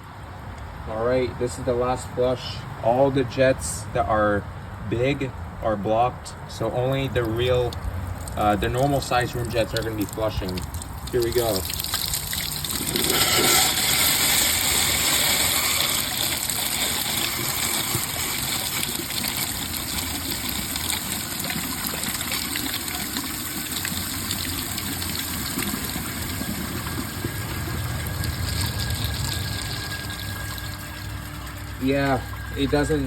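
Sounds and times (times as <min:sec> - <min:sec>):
toilet flushing: 0:08.4 - 0:33.0.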